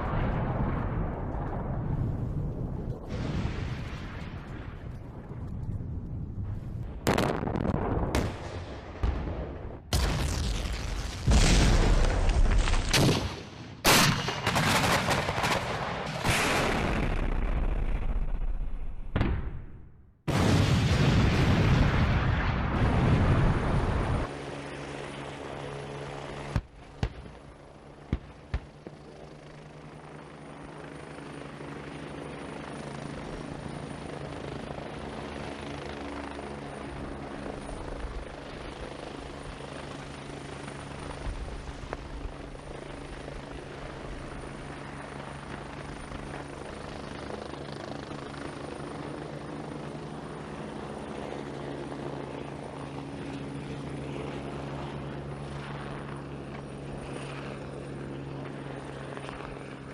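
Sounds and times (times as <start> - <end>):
helicopter rotor and turbine engine: 21.9 - 59.9.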